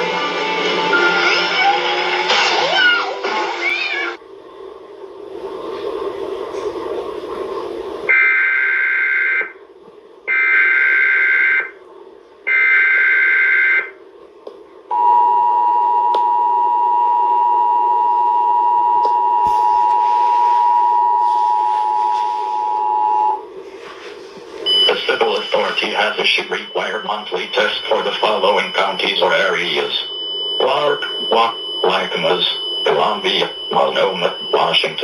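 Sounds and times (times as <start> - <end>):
two-tone attention signal: 24.7 - 29.0, 29.6 - 35.0.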